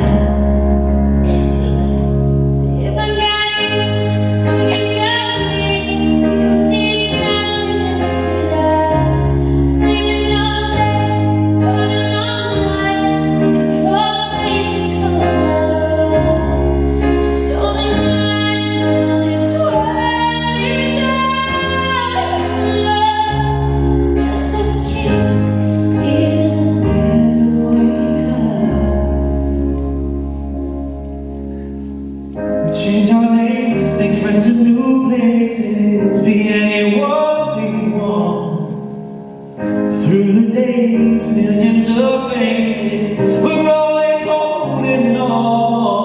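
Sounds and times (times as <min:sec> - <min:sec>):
instrumental accompaniment: 0:00.0 - 0:46.0
woman singing pop song: 0:02.5 - 0:29.4.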